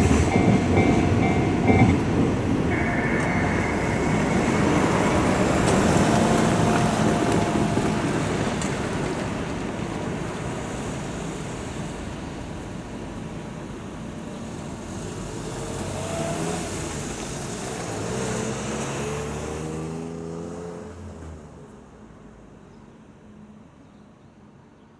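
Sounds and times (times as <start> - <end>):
train rumble: 0.0 - 19.0.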